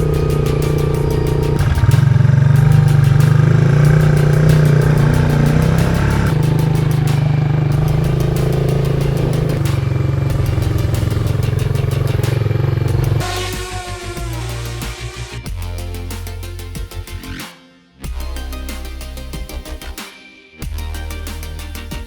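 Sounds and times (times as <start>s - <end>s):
quad bike engine running: 0.0s - 13.2s.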